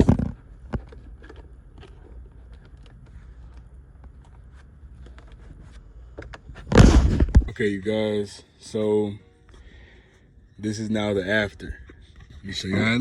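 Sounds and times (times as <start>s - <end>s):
handling clicks and scrapes: 0.0s - 7.5s.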